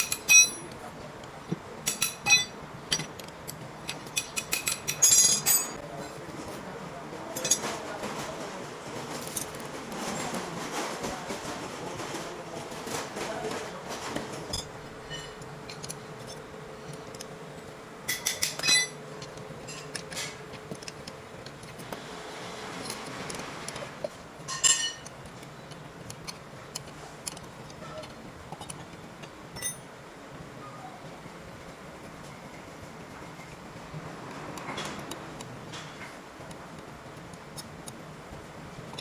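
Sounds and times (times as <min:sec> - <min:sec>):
sharp ringing metal clinks: 0:00.0 - 0:00.6
metal parts and tools clinking: 0:00.0 - 0:00.8, 0:01.9 - 0:05.8, 0:18.0 - 0:21.9, 0:24.4 - 0:25.2, 0:26.1 - 0:29.9.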